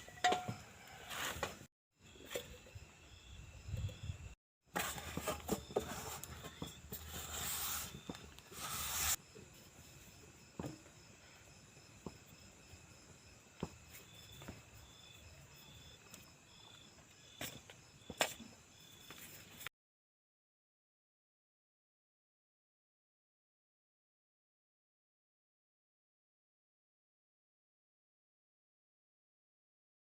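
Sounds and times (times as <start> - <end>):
crickets chirping: 0.0 - 19.6.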